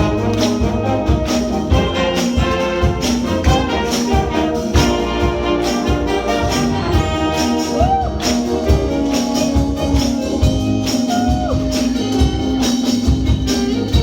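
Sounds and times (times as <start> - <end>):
drum beat: 0.0 - 14.0
wind band playing pop: 0.0 - 14.0.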